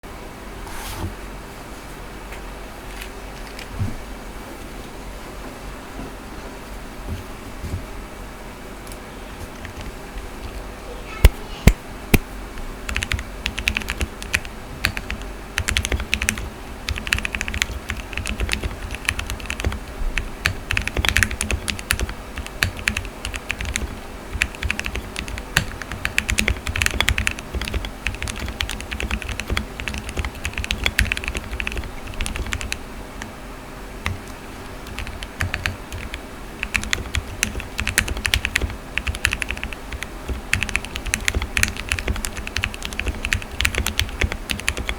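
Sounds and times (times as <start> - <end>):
typing on mechanical keyboard: 3.4 - 3.7, 9.6 - 10.7, 12.9 - 33.3, 34.0 - 44.9.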